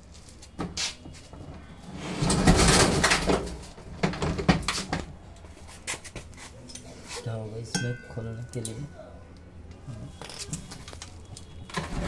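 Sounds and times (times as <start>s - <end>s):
washing machine scraping on floor: 1.6s - 3.6s.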